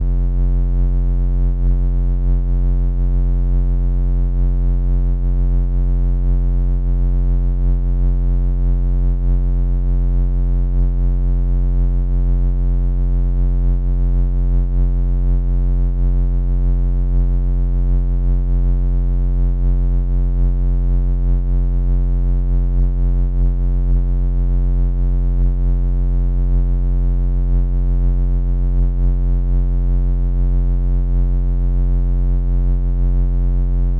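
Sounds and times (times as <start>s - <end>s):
low electronic laser buzz: 22.7s - 25.7s.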